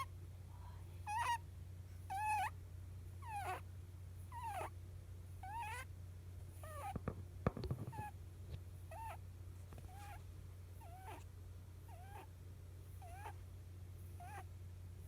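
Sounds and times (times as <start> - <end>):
rabbit squeaking: 1.0 - 2.6, 3.2 - 4.8, 5.4 - 5.9, 6.5 - 8.2, 8.8 - 10.2, 10.8 - 12.3, 12.9 - 13.4, 14.0 - 14.5.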